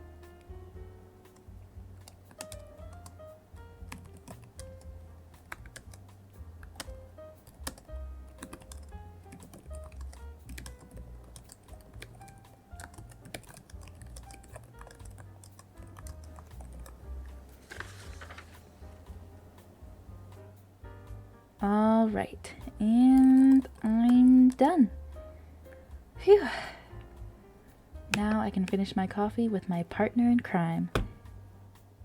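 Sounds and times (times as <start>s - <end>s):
soft background music: 0.0s - 32.0s
computer keyboard typing: 1.3s - 3.2s, 3.8s - 6.0s, 6.6s - 17.0s, 23.1s - 24.7s.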